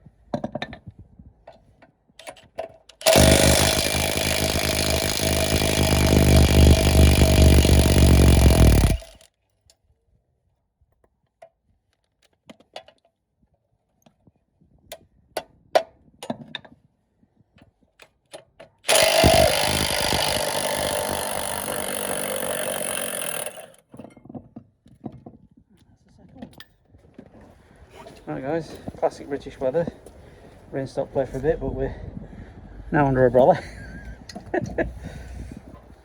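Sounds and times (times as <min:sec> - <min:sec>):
power tool running: 0:03.0 - 0:09.2, 0:18.9 - 0:23.8.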